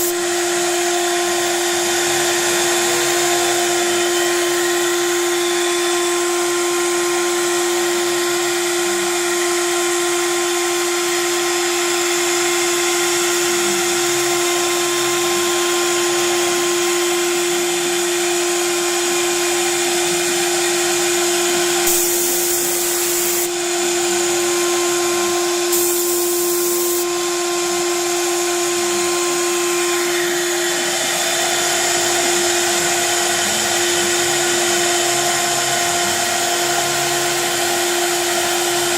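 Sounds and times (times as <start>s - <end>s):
machine hiss: 0.0s - 7.5s, 21.7s - 28.0s
router spindle high whine: 0.0s - 38.9s
short bursts of hissing: 21.9s - 23.5s, 25.7s - 27.0s.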